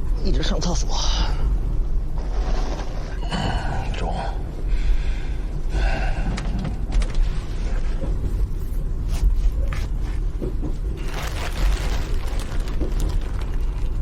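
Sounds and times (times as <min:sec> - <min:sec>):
train rumbling inside carriage: 0:05.5 - 0:14.0.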